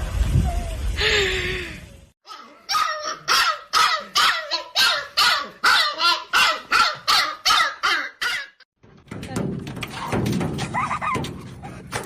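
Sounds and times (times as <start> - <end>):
dog barking: 2.3 - 8.6.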